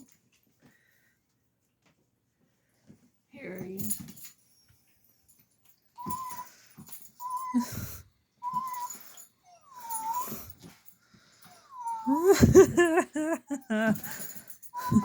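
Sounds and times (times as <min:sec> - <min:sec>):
puppy whining: 0:04.2 - 0:15.0.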